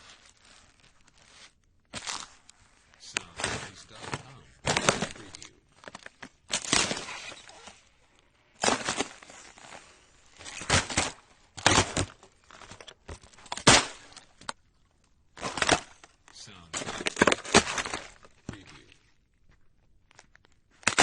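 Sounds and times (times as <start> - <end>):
footsteps crunching on ice: 3.1 - 7.4.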